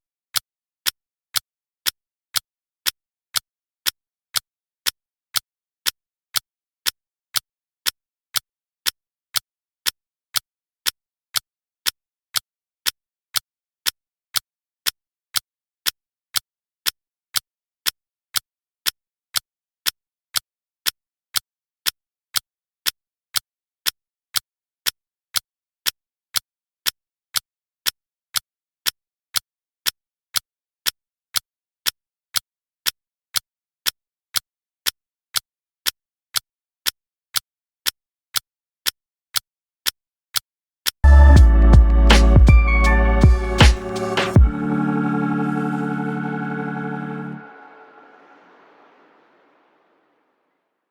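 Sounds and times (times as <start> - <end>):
countdown timer ticking: 41.0 - 49.0.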